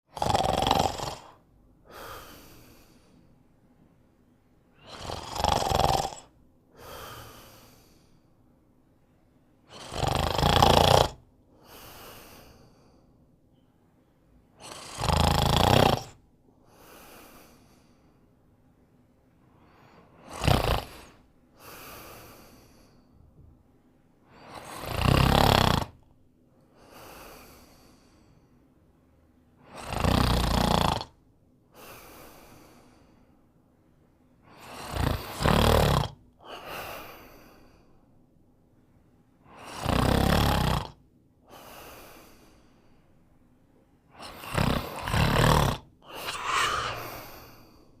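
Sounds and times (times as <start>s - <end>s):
person snoring: 0.1s - 3.2s, 4.8s - 8.2s, 9.7s - 13.0s, 14.6s - 18.0s, 19.6s - 23.0s, 24.3s - 26.0s, 29.6s - 31.2s, 34.5s - 37.9s, 39.4s - 42.8s, 44.1s - 48.0s
soft breath: 1.8s - 5.0s, 6.7s - 9.6s, 11.5s - 14.6s, 16.6s - 24.8s, 26.5s - 29.8s, 31.6s - 35.4s, 36.4s - 39.9s, 41.4s - 48.0s.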